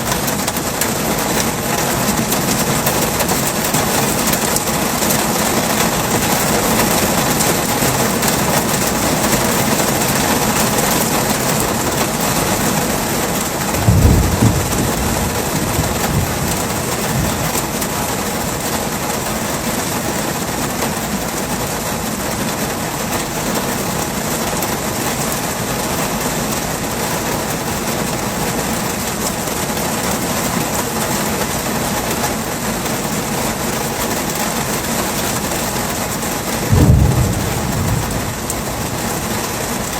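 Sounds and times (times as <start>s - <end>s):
heavy rain hissing: 0.0s - 39.9s
deep thunder rumble: 13.6s - 18.2s, 36.6s - 39.9s.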